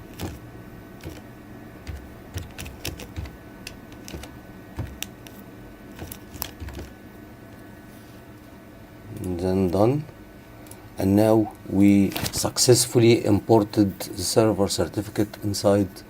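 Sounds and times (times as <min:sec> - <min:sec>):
computer keyboard keys tapping: 0:01.0 - 0:01.2, 0:01.8 - 0:05.4, 0:06.0 - 0:06.9.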